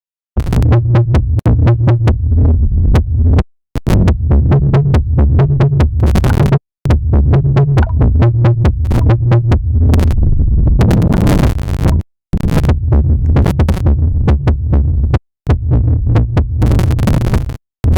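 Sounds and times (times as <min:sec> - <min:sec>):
electronic dance music: 0:06.0 - 0:06.6, 0:07.8 - 0:08.0.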